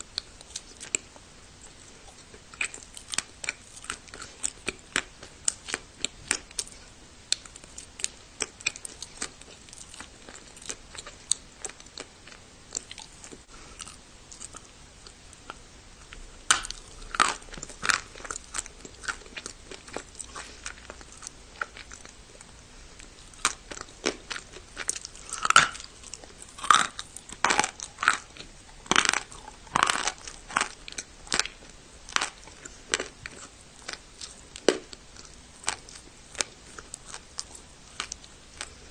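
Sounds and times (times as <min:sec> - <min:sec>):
chewing light crackles: 0:00.0 - 0:38.9
crunching bites: 0:23.3 - 0:38.8.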